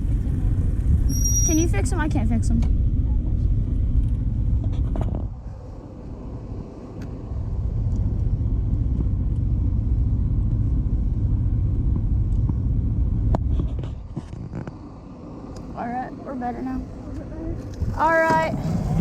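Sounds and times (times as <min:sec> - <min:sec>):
wind buffeting microphone: 0:00.0 - 0:16.0, 0:16.7 - 0:19.0
scooter rumble: 0:17.0 - 0:19.0.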